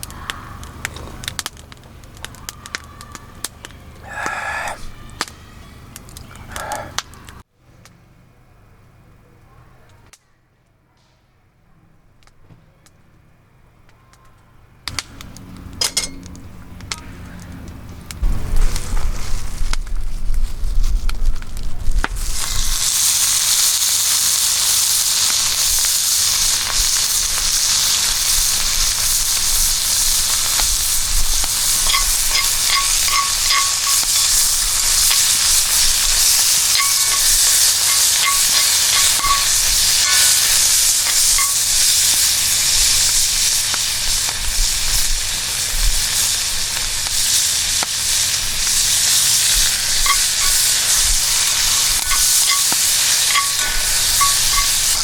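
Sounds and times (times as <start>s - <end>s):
food sizzling in hot oil: 18.3s - 55.0s.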